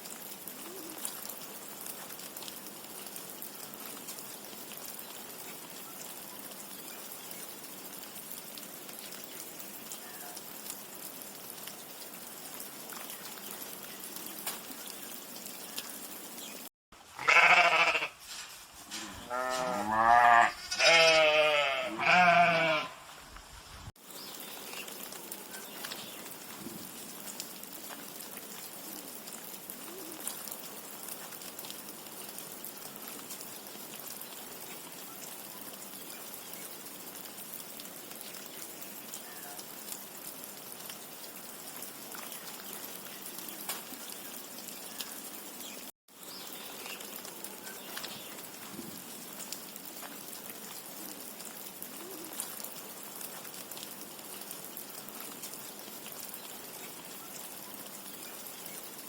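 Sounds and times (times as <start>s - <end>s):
sheep bleating: 17.2s - 18.2s, 19.0s - 23.0s.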